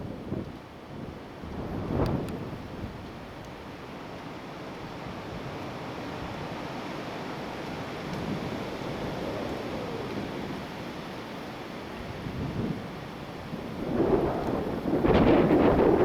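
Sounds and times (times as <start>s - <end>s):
wind buffeting microphone: 0.0s - 3.3s, 12.0s - 16.0s
strong gusty wind: 0.0s - 3.6s, 6.1s - 16.0s.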